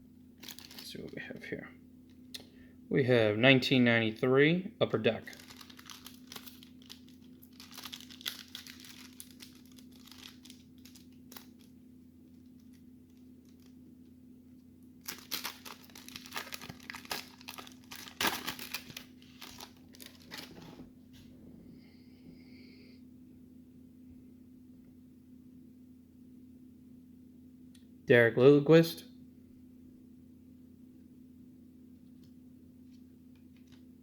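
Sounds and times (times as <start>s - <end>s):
faint steady hum: 0.0s - 34.0s
wrapper tearing and crinkling: 0.4s - 1.1s, 5.2s - 11.7s, 12.5s - 13.7s, 15.0s - 20.8s.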